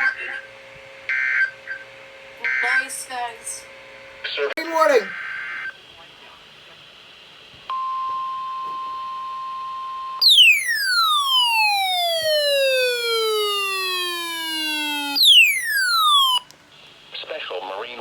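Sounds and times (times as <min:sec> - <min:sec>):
weather radio alert tone: 0:04.6 - 0:05.2
falling electronic tone: 0:10.2 - 0:16.4.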